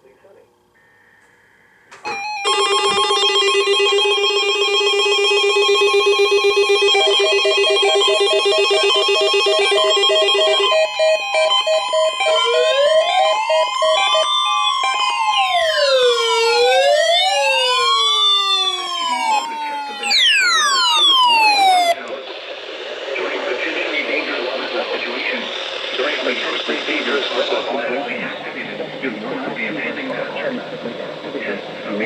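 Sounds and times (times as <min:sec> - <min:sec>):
electronic sirens wailing: 0:00.8 - 0:22.1
steady high tone: 0:00.8 - 0:22.1
rapid electronic beeping: 0:02.1 - 0:32.0.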